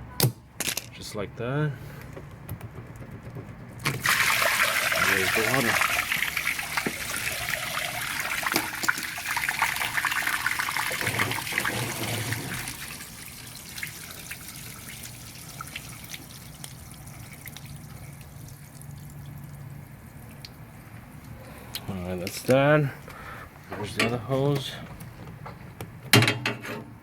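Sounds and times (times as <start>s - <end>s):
water trickling from hose: 3.8s - 21.6s
water dripping: 12.5s - 21.4s.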